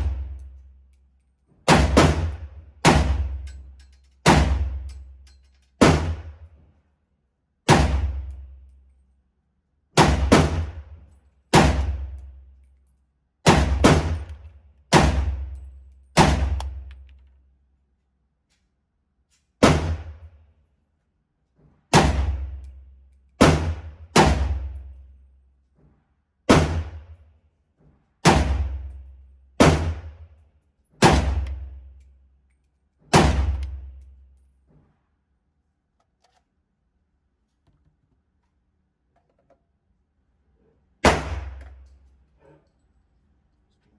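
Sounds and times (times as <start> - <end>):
gunshots: 26.5 - 27.0, 41.0 - 41.6.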